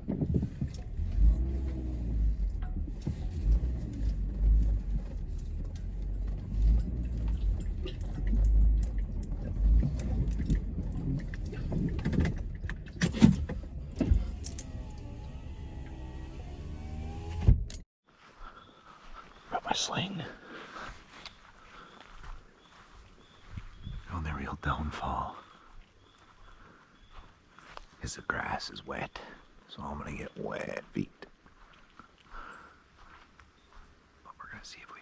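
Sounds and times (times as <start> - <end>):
rattles and clicks: 0.0 - 16.4
road rumble inside car: 0.0 - 17.8.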